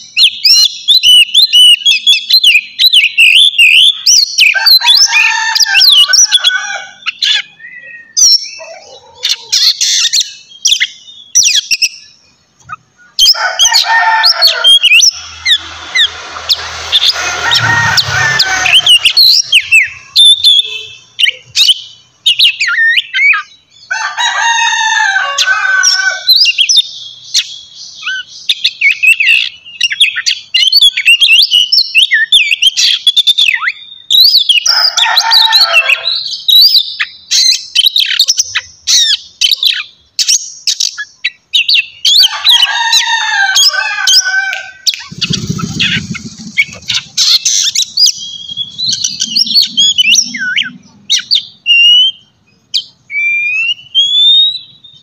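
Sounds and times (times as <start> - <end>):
bird singing whistles and trills: 0.0 - 4.6, 7.0 - 13.4, 18.7 - 23.9, 26.3 - 34.7, 44.9 - 55.0.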